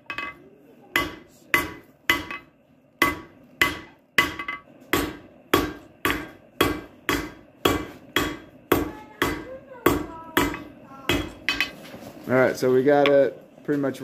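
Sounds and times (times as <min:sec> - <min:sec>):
hammer striking steel on anvil: 0:01.0 - 0:11.8.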